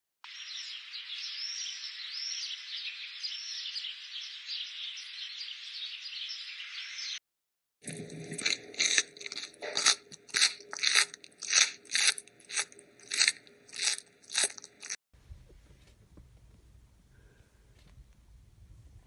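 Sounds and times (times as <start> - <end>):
animal chewing crunchy food: 7.8 - 15.0.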